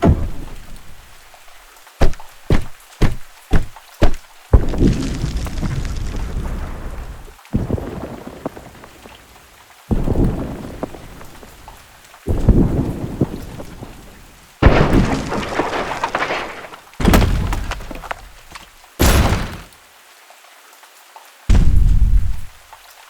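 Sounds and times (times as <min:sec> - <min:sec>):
crash impacts with crackling debris: 0:00.0 - 0:01.2, 0:02.0 - 0:11.7, 0:14.6 - 0:19.8, 0:21.5 - 0:22.6.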